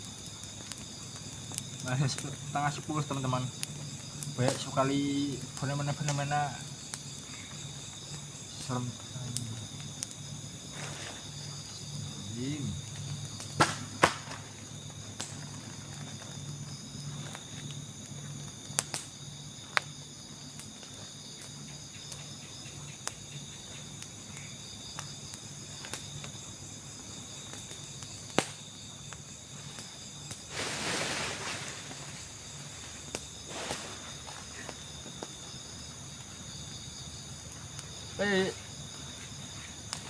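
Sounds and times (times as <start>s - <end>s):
insects chirping: 0.0s - 40.0s
rustling: 30.5s - 35.3s.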